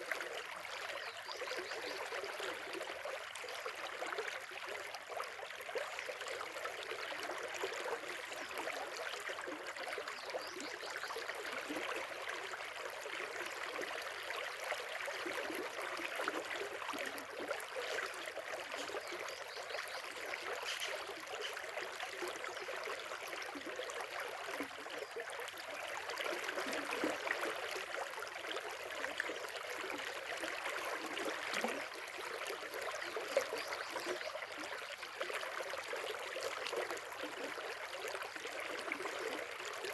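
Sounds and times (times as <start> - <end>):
stream water rushing: 16.1 - 22.9.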